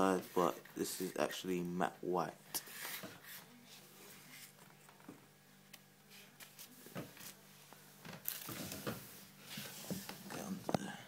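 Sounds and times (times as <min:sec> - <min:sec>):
low steady hum: 0:00.0 - 0:11.0.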